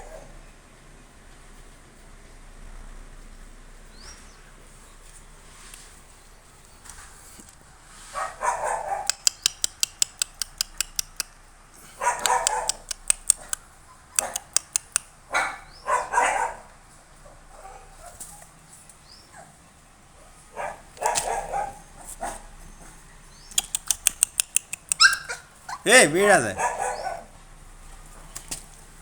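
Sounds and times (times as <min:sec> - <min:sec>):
puppies barking: 0:08.2 - 0:18.5, 0:19.2 - 0:27.4
quick sharp clicks: 0:09.1 - 0:11.4, 0:12.2 - 0:13.6, 0:14.2 - 0:15.1, 0:23.5 - 0:25.3.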